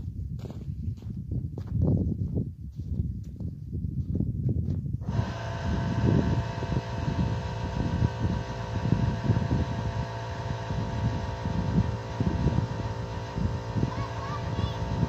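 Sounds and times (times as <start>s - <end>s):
engine humming and throbbing: 5.0s - 15.0s.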